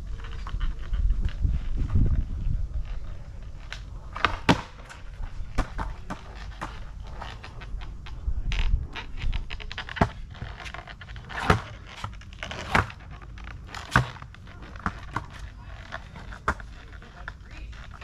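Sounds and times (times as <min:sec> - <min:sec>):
skateboard rolling rumble: 0:00.0 - 0:18.0
skateboard clacks and knocks: 0:03.7 - 0:08.1, 0:08.8 - 0:18.0.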